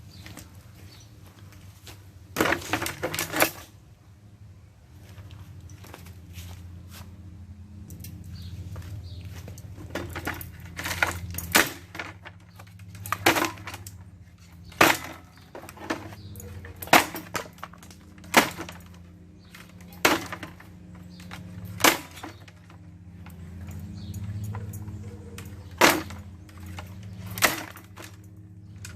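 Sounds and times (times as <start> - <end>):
steady low hum: 0.0 - 28.9
ceiling fan being smashed: 9.8 - 28.9.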